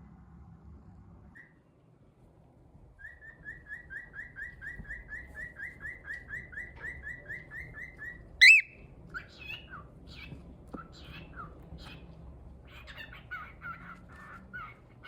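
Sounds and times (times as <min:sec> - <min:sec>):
cockatiel chirping: 0:03.0 - 0:10.3
shrill bird call: 0:08.4 - 0:08.7.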